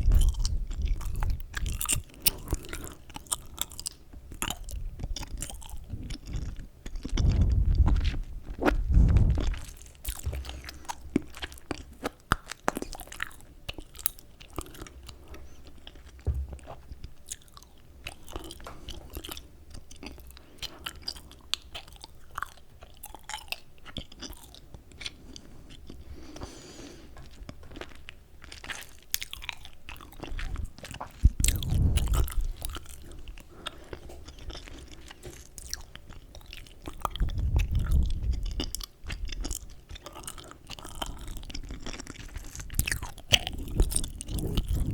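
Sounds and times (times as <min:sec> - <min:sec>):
gum chewing: 0:00.0 - 0:26.5, 0:27.2 - 0:44.9
low rumbles: 0:07.0 - 0:11.0, 0:31.3 - 0:33.4.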